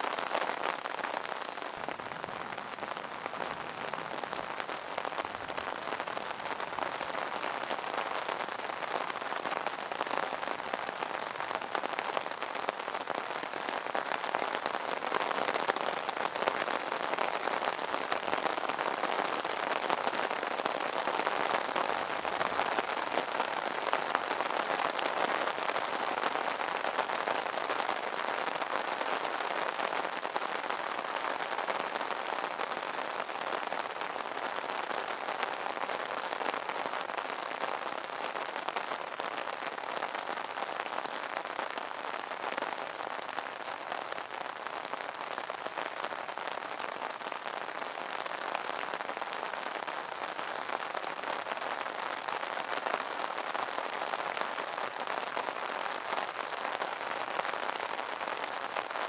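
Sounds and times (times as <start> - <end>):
rain pattering on an umbrella: 0.0 - 59.0.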